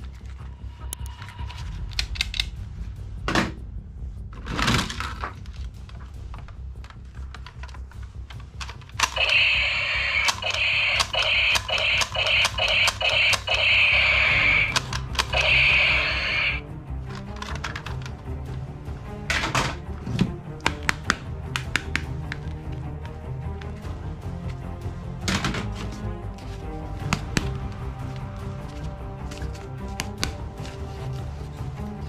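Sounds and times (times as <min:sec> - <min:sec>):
toy gun clicks: 0:09.0 - 0:16.6
toy gun rapid rattling: 0:09.0 - 0:16.6.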